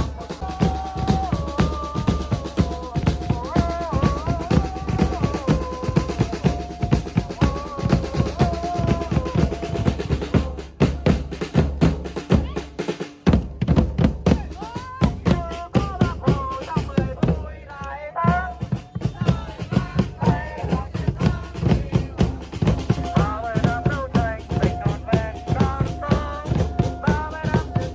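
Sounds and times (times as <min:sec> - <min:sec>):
fast dense drumming: 0:00.0 - 0:27.9
held melody line: 0:19.1 - 0:27.9.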